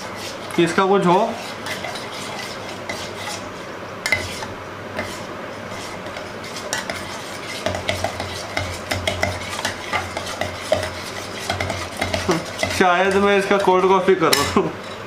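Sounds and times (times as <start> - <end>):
spoon whisking in container: 0.0 - 3.5, 4.1 - 14.1.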